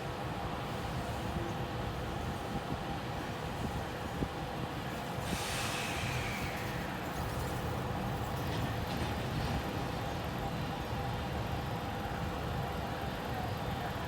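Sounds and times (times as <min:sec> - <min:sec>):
freight train rumbling: 0:00.0 - 0:14.0
brake hiss: 0:05.2 - 0:06.9.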